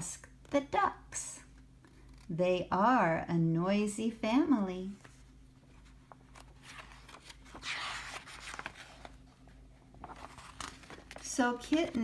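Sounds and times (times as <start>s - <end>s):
paper page turning: 5.0s - 12.0s.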